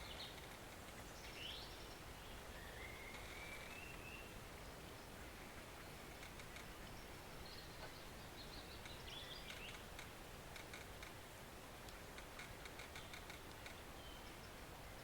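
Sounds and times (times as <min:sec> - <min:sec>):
light clicks: 0:11.8 - 0:13.8.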